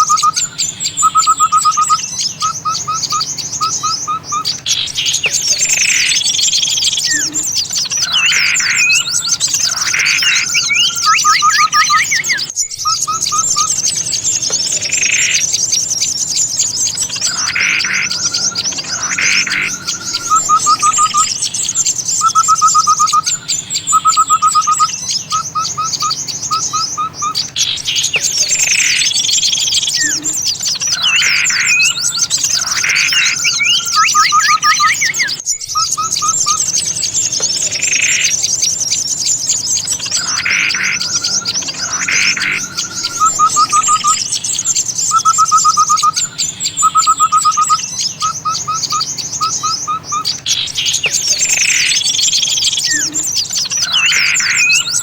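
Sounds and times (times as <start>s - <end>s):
rapid whistled bird notes: 0.0s - 55.0s
sharp bird calls: 0.0s - 55.0s
songbirds twittering: 0.0s - 55.0s.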